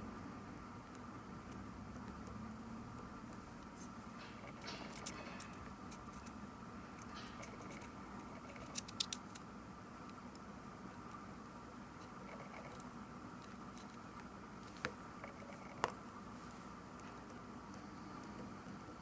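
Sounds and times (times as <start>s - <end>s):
small parts clicking and scraping: 3.3s - 9.5s, 12.0s - 16.0s.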